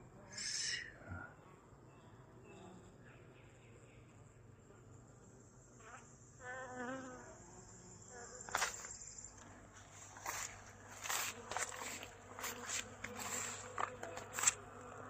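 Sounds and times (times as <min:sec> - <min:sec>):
crickets chirring: 0:04.1 - 0:15.0.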